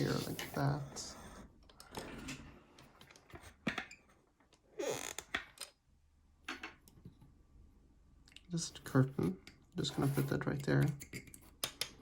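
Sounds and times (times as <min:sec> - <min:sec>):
short creak: 0:04.8 - 0:05.3.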